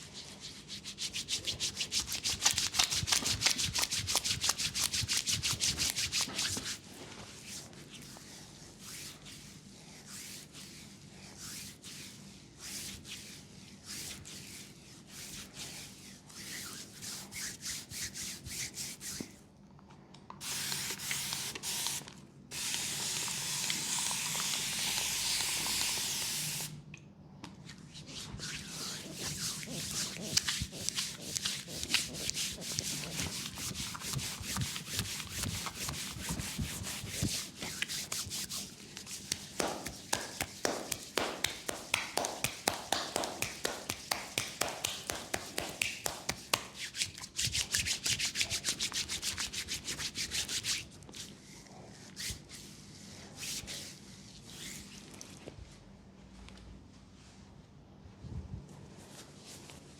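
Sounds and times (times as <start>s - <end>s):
hands rubbing skin: 0.0s - 9.3s, 28.1s - 51.3s
quick slaps on leg: 39.3s - 46.9s.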